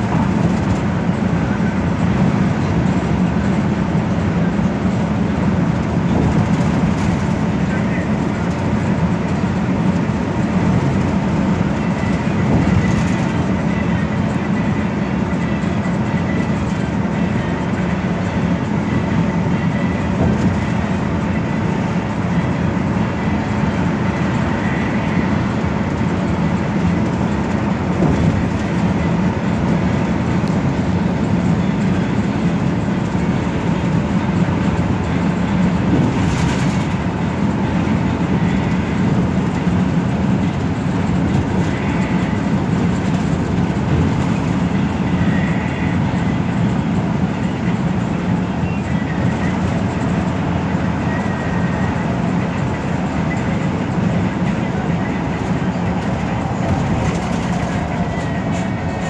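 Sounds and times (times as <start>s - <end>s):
bus engine drone: 0.0s - 59.0s
road rumble: 0.0s - 59.0s.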